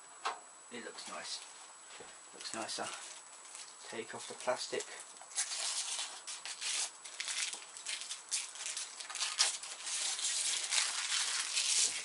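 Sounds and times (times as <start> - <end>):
plastic wrapping crinkling: 2.4 - 12.0.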